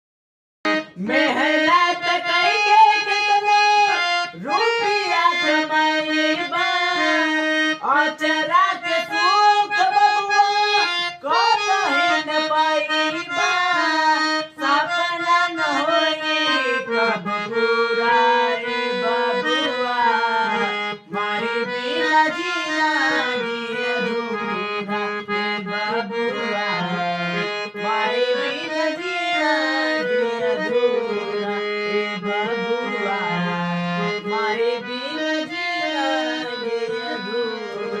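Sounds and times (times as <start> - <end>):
reed instrument melody: 9.1 - 38.0.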